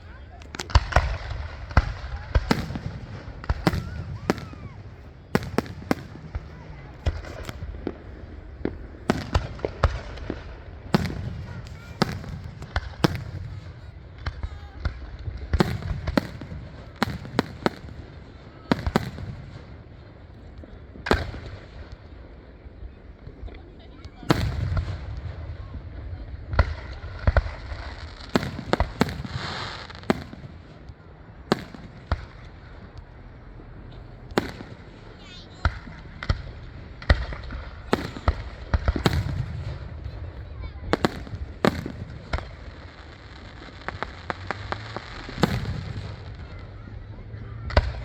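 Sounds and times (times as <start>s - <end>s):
fireworks bangs with booming echo: 0.0s - 48.0s.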